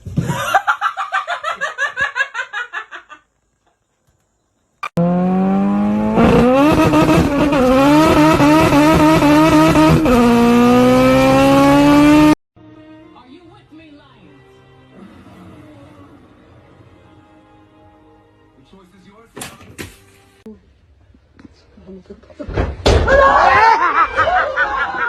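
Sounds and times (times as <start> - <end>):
car engine accelerating hard: 4.9 - 12.4.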